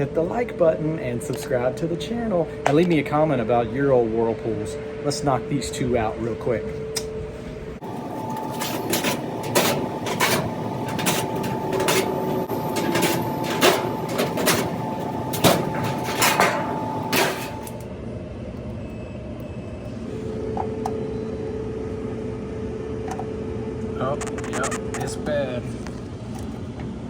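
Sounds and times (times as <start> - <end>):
steady whine: 0.0 - 27.0.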